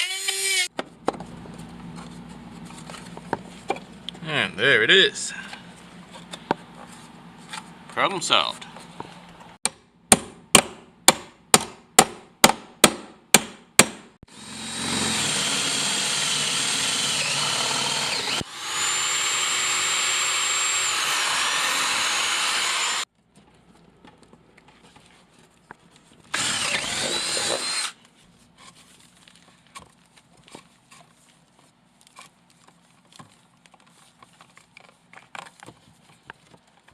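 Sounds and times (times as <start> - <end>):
power drill whining: 14.3 - 23.1, 26.3 - 28.0.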